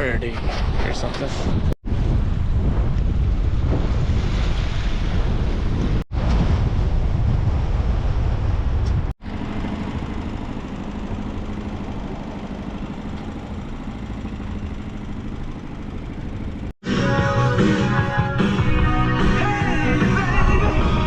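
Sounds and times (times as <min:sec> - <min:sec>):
wind buffeting microphone: 0:00.0 - 0:10.4, 0:19.7 - 0:21.0
boat engine humming: 0:09.2 - 0:21.0.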